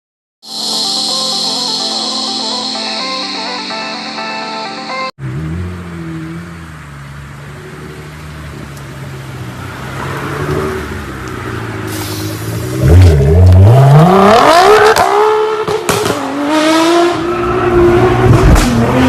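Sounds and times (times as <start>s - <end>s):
car engine idling and revving: 5.2s - 19.0s.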